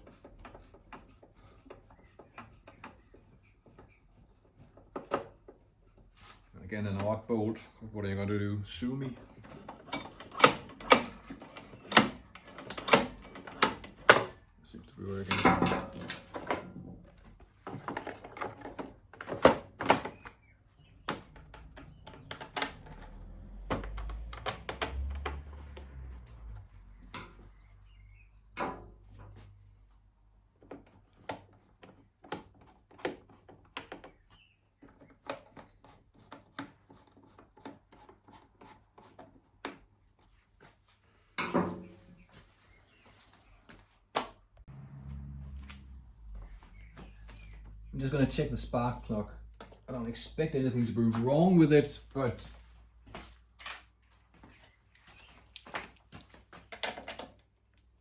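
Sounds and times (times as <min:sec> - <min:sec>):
tools knocking and clicking: 0:09.2 - 0:14.4, 0:15.3 - 0:20.4, 0:21.0 - 0:26.0, 0:49.5 - 0:49.9, 0:56.6 - 0:57.9
low rumble: 0:44.6 - 0:49.6.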